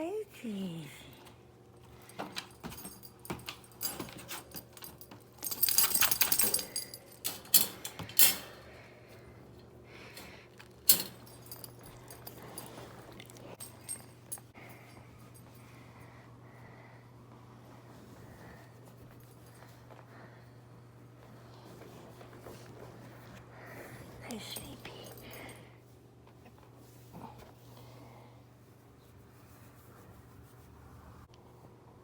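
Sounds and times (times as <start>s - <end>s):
puppy rustling and scratching: 28.6s - 31.1s.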